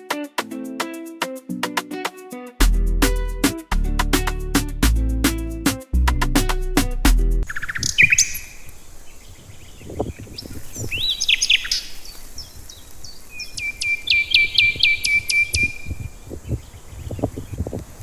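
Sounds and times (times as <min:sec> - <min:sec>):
songbirds chirping: 0:07.4 - 0:18.0.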